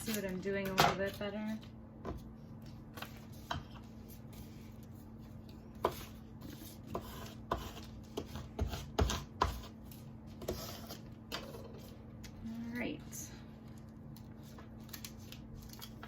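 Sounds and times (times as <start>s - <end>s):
tape crinkling: 13.8s - 16.0s.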